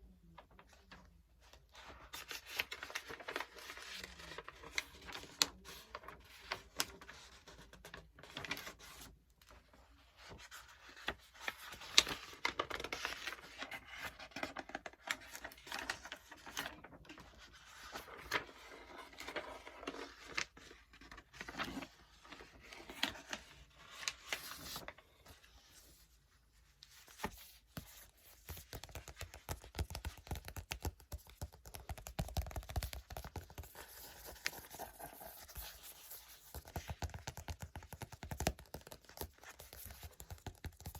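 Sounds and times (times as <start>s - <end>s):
book pages turning: 10.2s - 40.9s.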